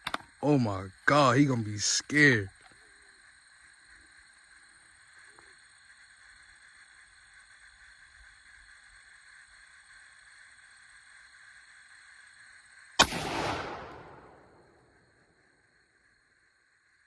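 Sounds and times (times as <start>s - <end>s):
rifle shot with echo: 13.0s - 14.8s.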